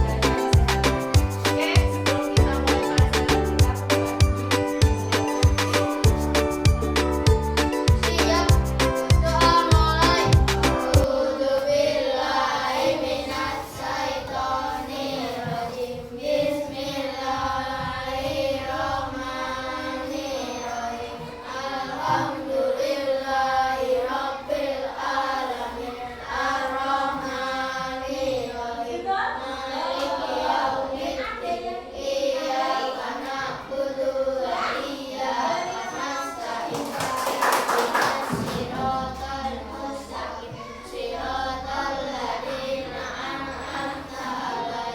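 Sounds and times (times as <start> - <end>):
children singing in unison: 0.0 - 7.1, 7.8 - 44.9.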